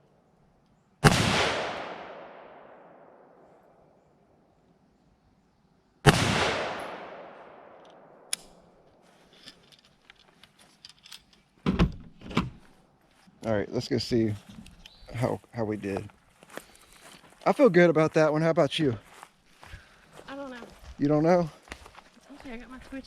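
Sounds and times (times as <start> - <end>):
rifle shots with echo: 1.0 - 3.4, 6.0 - 8.7.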